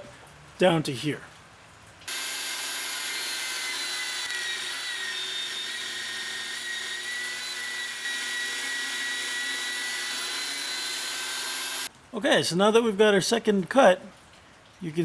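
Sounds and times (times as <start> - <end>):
power tool whining cutting steel: 2.1 - 11.9.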